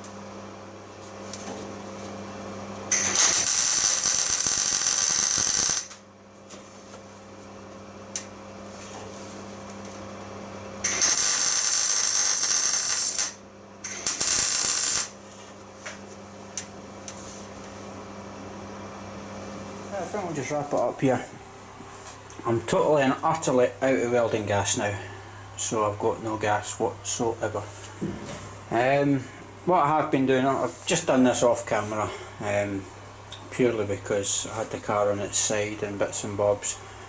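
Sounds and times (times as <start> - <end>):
steady low hum: 0.0 - 37.0
power tool bursts: 2.9 - 6.0, 10.8 - 15.2.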